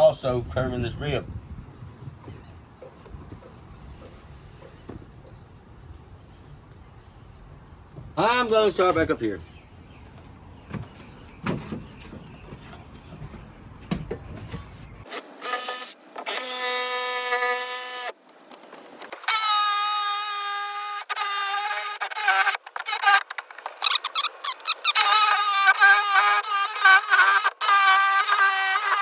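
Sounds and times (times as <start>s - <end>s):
jigsaw high-pitched whine: 15.1s - 18.1s, 19.2s - 23.2s, 23.8s - 29.0s.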